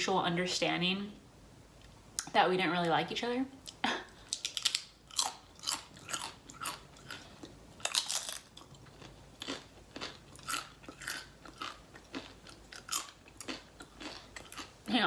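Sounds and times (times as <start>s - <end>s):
person chewing crunchy food: 3.7s - 15.0s.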